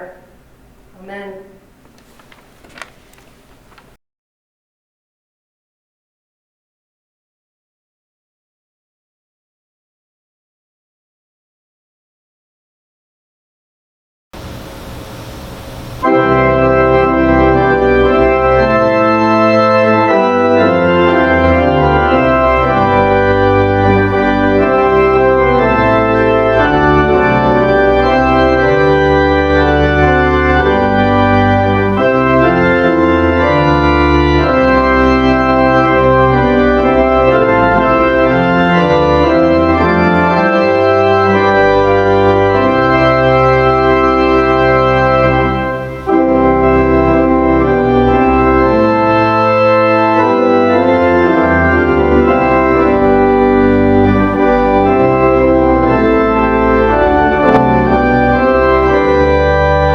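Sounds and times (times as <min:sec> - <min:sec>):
church organ playing chords: 0:14.4 - 0:59.9.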